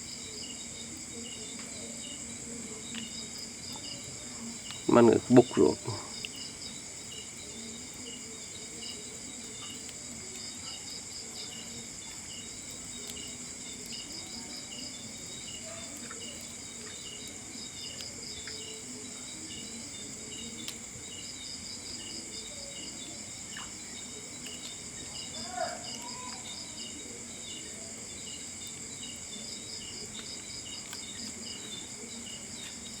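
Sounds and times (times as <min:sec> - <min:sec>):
insects chirping: 0:00.0 - 0:33.0.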